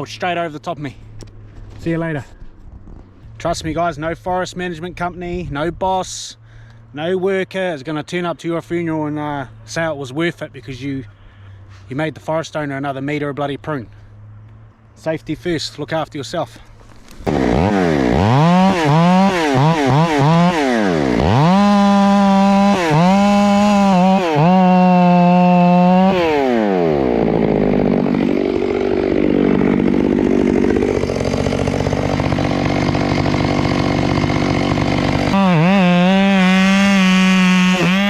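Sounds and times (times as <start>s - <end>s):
chainsaw revving and cutting wood: 17.0s - 38.0s.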